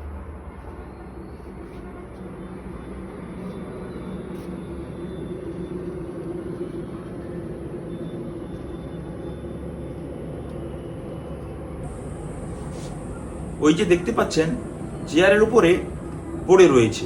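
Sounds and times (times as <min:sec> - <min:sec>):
motor hum: 0:11.0 - 0:17.0.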